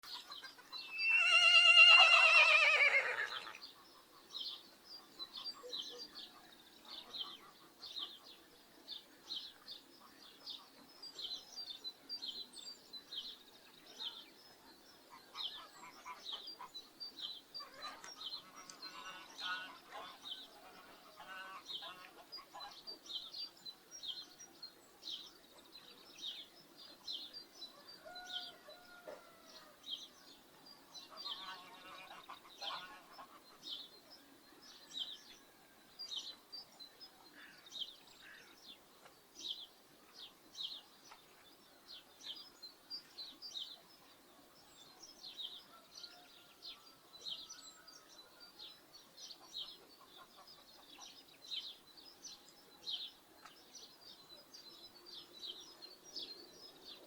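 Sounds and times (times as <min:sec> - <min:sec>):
faint poultry calls: 0:17.6 - 0:22.8, 0:27.7 - 0:29.8, 0:31.0 - 0:35.8.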